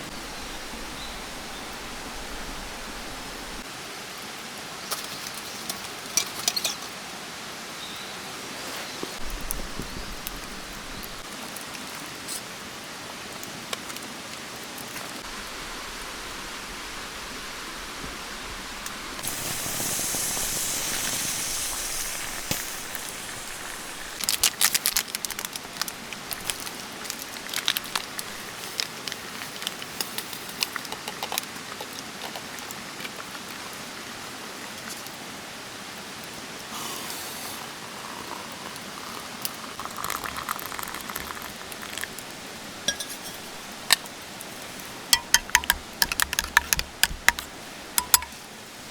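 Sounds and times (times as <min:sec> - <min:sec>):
rain falling: 0:09.0 - 0:29.8
high hiss: 0:15.3 - 0:24.3, 0:36.7 - 0:38.4.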